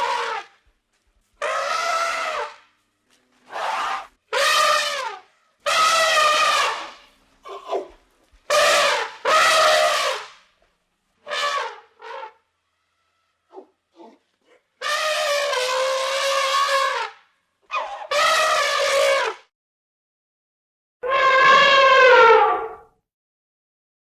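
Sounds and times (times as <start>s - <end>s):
animal calling loudly: 1.4s - 2.6s, 3.5s - 10.3s, 17.7s - 19.4s, 21.0s - 22.9s.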